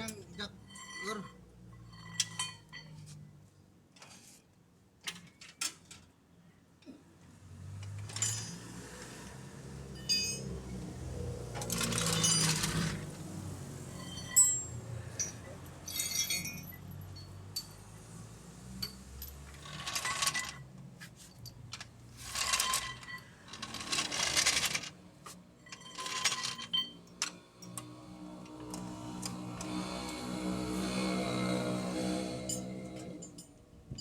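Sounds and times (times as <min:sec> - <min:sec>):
metal tools clinking: 0:00.0 - 0:03.1, 0:10.0 - 0:10.6, 0:11.6 - 0:13.1, 0:13.9 - 0:17.9, 0:21.3 - 0:24.9, 0:25.6 - 0:27.4.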